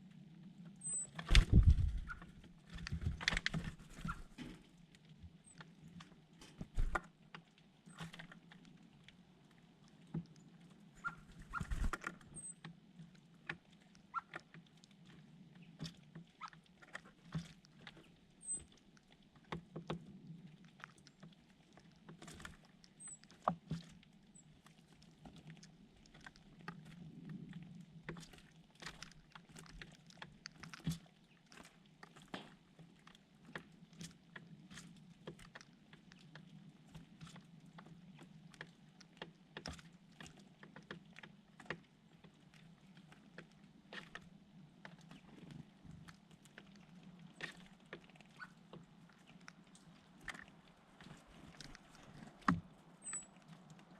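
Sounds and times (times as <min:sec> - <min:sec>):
bird taps and scratching: 0:11.0 - 0:12.5.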